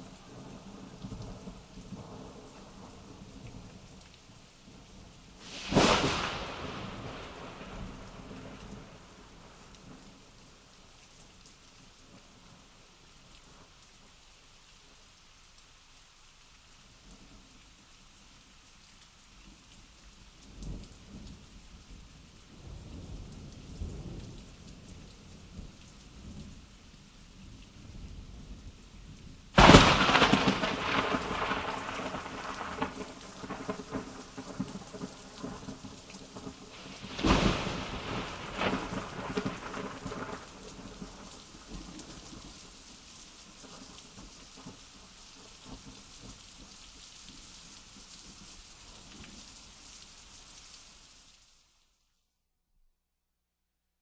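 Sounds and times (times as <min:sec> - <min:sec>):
steady rain: 0:00.0 - 0:52.1
loud thunder crack: 0:05.4 - 0:08.6, 0:29.6 - 0:33.5, 0:36.9 - 0:40.4
low rolling thunder: 0:05.4 - 0:09.6, 0:29.6 - 0:42.6.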